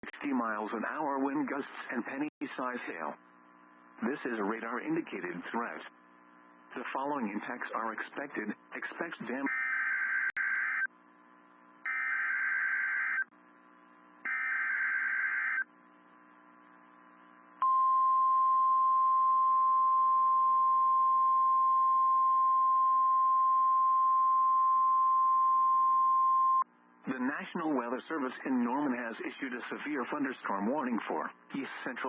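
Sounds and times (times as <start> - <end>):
screeching digital data bursts: 9.5 - 10.9, 11.9 - 13.3, 14.3 - 15.7
steady warning alarm tone: 9.5 - 10.9, 11.8 - 13.3, 14.2 - 15.7.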